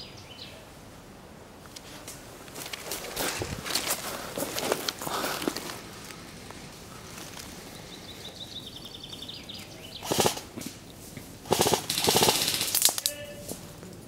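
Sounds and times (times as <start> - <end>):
bird chirping: 0.0 - 0.6, 6.0 - 10.6
airsoft gun bursts: 10.0 - 10.6, 11.4 - 13.3.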